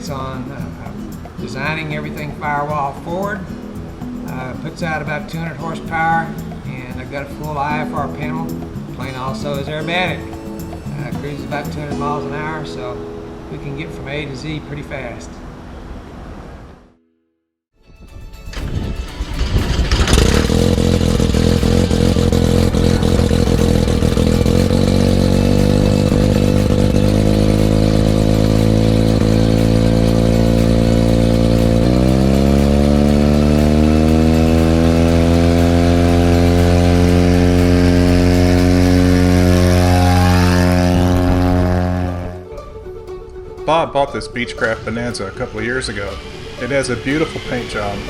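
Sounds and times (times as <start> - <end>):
aircraft rotary engine running loudly: 19.3 - 42.1.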